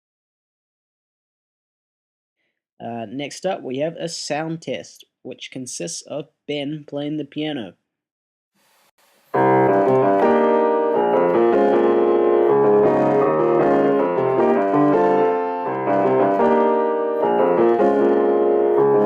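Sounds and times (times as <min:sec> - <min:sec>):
piano chords: 0:09.4 - 0:19.0.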